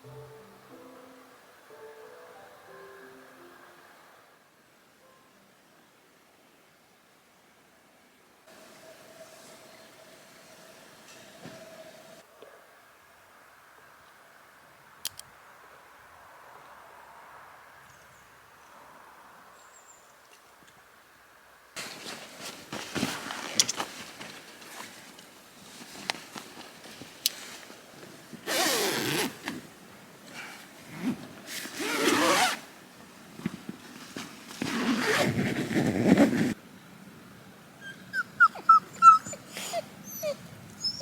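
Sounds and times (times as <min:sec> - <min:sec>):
dog whimpering: 0:37.8 - 0:41.0
dog whining: 0:37.8 - 0:41.0.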